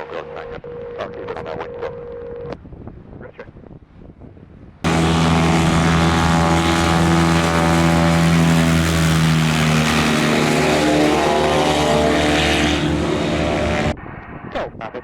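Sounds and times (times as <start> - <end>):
light aircraft engine and propeller: 4.8 - 14.4.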